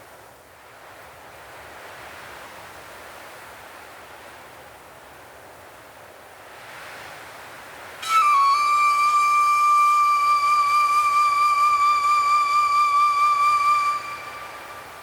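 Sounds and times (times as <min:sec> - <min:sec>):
soft wind-like hiss: 0:00.0 - 0:15.0
long high ambient note: 0:08.0 - 0:15.0.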